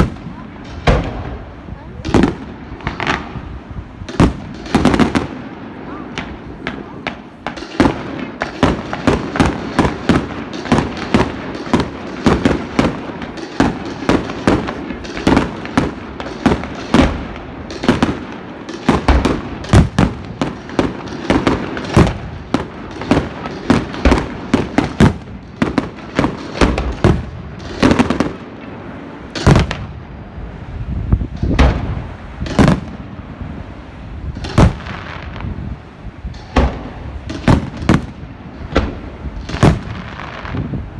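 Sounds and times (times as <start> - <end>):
fireworks booms: 0.0 - 40.9
fireworks crackling bangs: 0.0 - 40.9.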